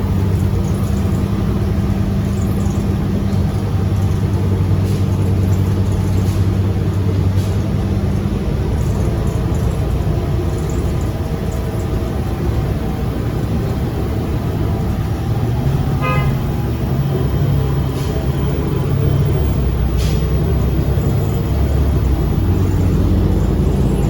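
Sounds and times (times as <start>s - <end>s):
bus engine and road rumble: 0.0s - 24.0s
short horn toot: 16.0s - 16.6s.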